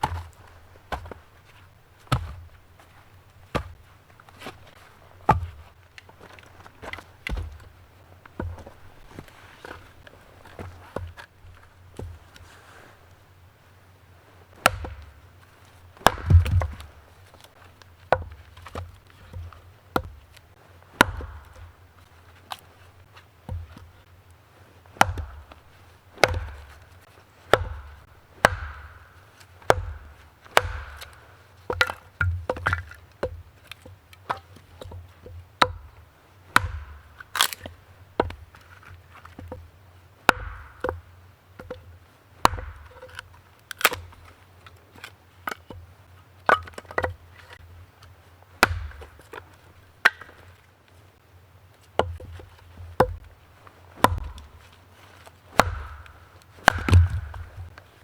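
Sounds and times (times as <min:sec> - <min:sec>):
axe chopping wood: 0:00.0 - 0:01.3, 0:02.1 - 0:02.5, 0:03.5 - 0:03.8, 0:05.2 - 0:09.8, 0:14.5 - 0:15.3, 0:16.0 - 0:20.4, 0:21.0 - 0:21.9, 0:23.5 - 0:23.9, 0:25.0 - 0:39.7, 0:40.3 - 0:44.3, 0:46.5 - 0:47.6, 0:48.6 - 0:50.6, 0:52.0 - 0:53.3, 0:54.0 - 0:57.9.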